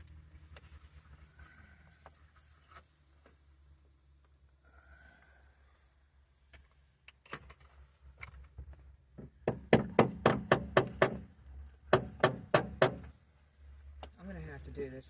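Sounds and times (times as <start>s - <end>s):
sharp knocks: 9.2s - 11.3s, 11.9s - 13.1s.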